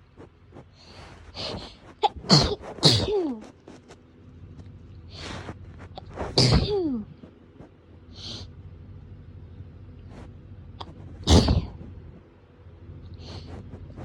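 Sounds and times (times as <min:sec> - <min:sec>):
soft breathy sound: 0:00.6 - 0:02.0, 0:13.1 - 0:14.0
person sneezing: 0:01.4 - 0:03.5, 0:06.0 - 0:07.1, 0:10.8 - 0:11.8.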